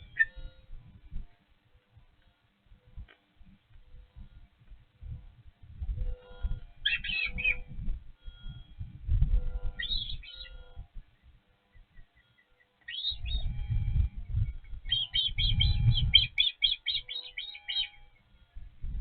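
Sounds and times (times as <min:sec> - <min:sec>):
osprey high chirps: 0:00.0 - 0:00.8, 0:06.1 - 0:19.0
low rumble: 0:13.2 - 0:16.4.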